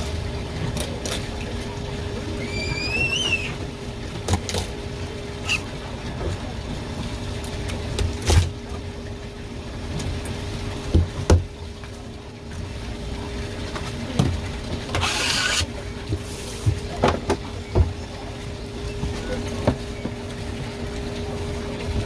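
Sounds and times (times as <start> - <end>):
steady background hum: 0.0 - 22.0.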